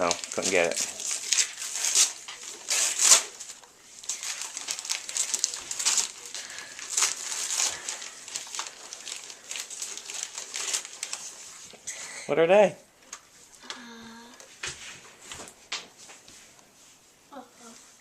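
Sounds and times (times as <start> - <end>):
wrapping paper crinkling: 0.0 - 11.9.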